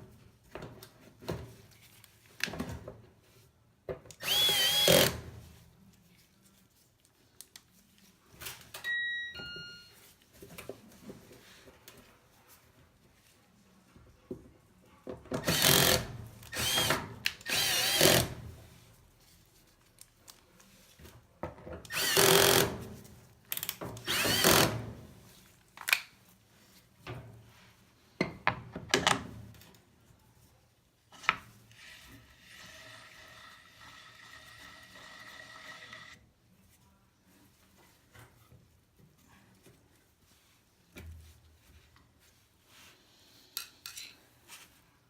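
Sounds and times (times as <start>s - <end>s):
power drill running: 4.2s - 5.2s, 15.4s - 18.3s, 21.9s - 22.6s, 24.1s - 24.7s, 32.4s - 36.2s.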